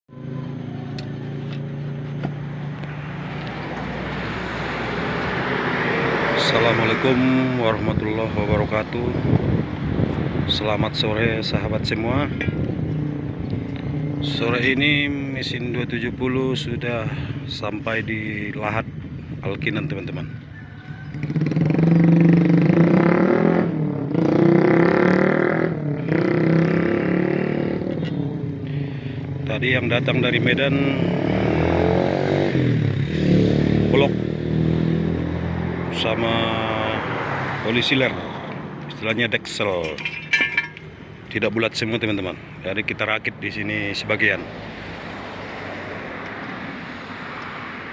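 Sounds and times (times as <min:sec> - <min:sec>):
vehicle engine humming: 0:00.1 - 0:07.6, 0:38.7 - 0:41.4.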